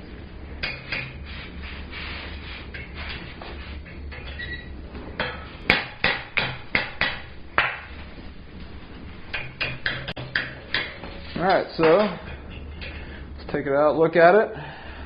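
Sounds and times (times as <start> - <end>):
hammer striking hot steel: 0.6 - 1.3, 5.2 - 8.0, 9.3 - 13.2.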